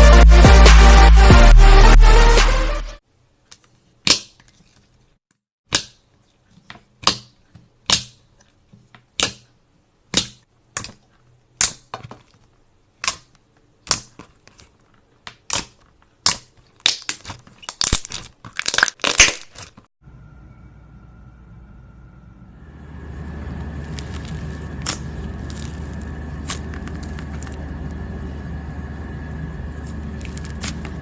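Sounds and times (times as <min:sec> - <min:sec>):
brittle material crunching: 0:11.6 - 0:19.9, 0:23.9 - 0:27.6.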